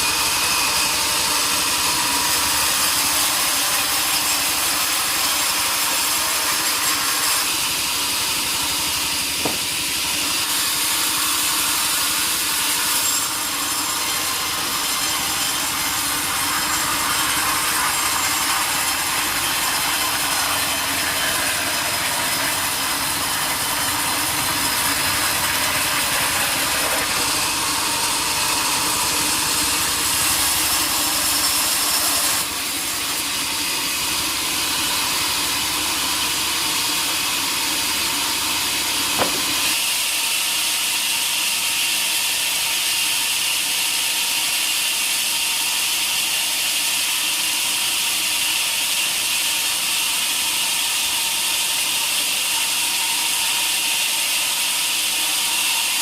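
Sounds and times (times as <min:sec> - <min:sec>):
saw cutting through log: 0:00.0 - 0:56.0
sharp knock: 0:09.4 - 0:10.0, 0:39.2 - 0:39.7.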